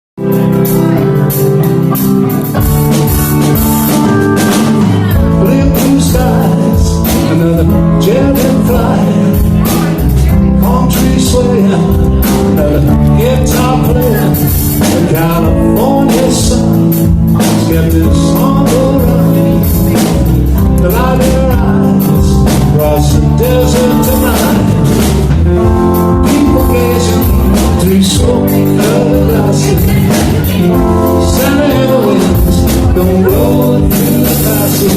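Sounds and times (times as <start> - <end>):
bass: 0.2 - 34.9
drum kit: 0.2 - 34.9
electric guitar: 0.2 - 34.9.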